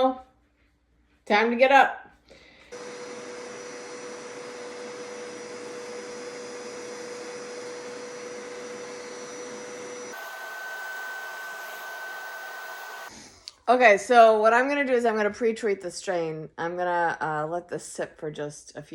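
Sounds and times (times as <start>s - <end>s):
carpet cleaner motor whining: 2.7s - 13.1s.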